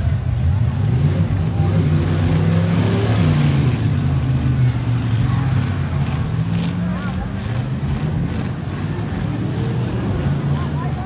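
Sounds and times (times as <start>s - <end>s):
car engines revving: 0.0s - 11.0s.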